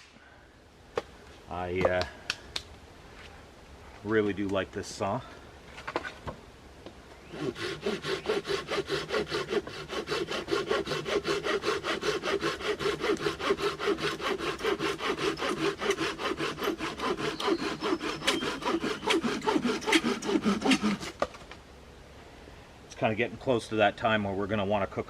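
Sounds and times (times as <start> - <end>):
pull saw cutting wood: 7.3 - 21.3.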